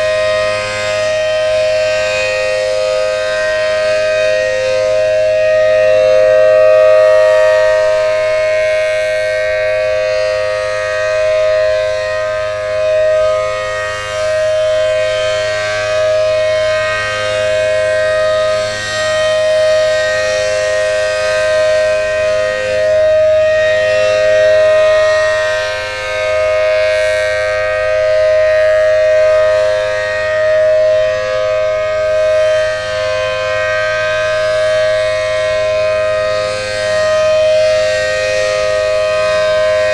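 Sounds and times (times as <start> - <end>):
outdoor warning siren: 0.0 - 39.9.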